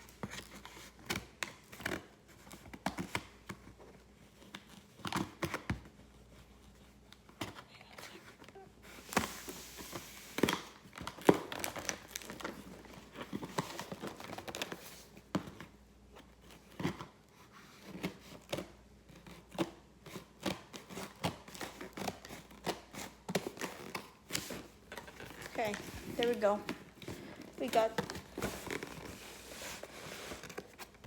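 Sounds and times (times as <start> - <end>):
packaging crinkling and tearing: 10.3 - 14.9.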